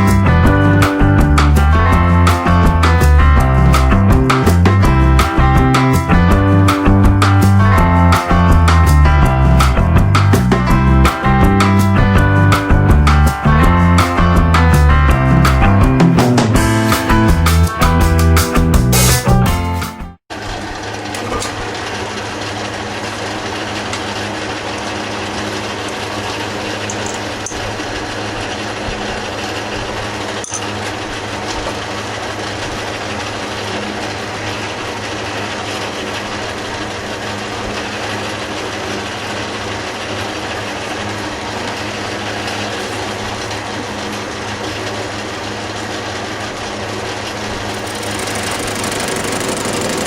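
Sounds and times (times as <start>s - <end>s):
metal lathe running: 20.6s - 50.0s.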